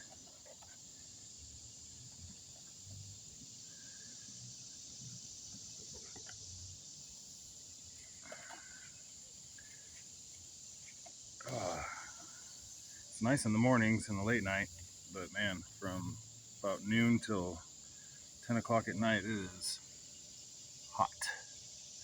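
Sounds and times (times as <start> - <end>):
crickets droning: 0.0 - 22.0.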